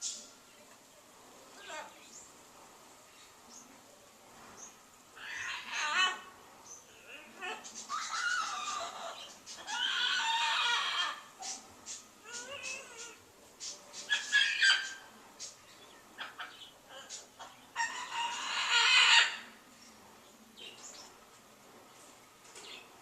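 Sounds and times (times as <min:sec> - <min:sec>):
large bird crying out: 0:05.1 - 0:13.3, 0:14.1 - 0:15.2, 0:16.2 - 0:19.6.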